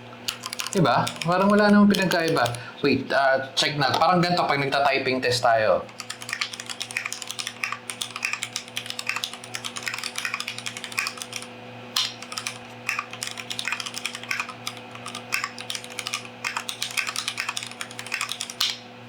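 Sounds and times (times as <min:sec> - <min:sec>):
mechanical keyboard key clacks: 0:00.3 - 0:02.6, 0:05.9 - 0:18.8.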